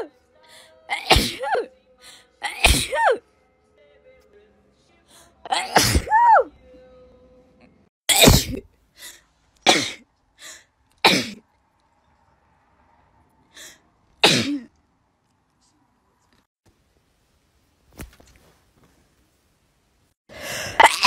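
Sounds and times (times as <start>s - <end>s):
person sneezing: 0.9s - 1.7s, 2.4s - 3.2s, 5.5s - 6.4s, 8.1s - 10.0s.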